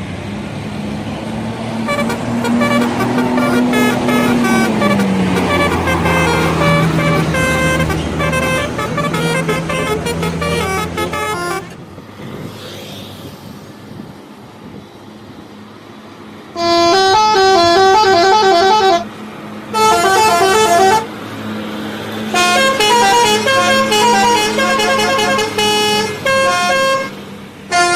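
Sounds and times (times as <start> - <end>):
street noise: 0.0 - 27.9
tuned bus air horns melody: 1.8 - 11.8, 16.6 - 19.1, 19.7 - 21.2, 22.3 - 27.9.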